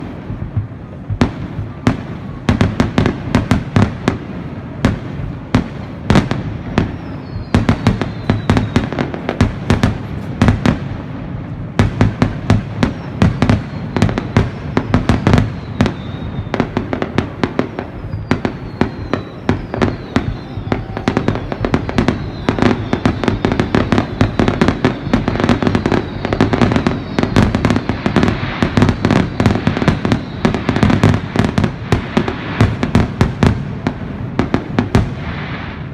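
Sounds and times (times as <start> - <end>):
fireworks bangs and crackles: 0.0 - 35.9
faint falling whistles: 6.3 - 9.2, 12.5 - 32.6.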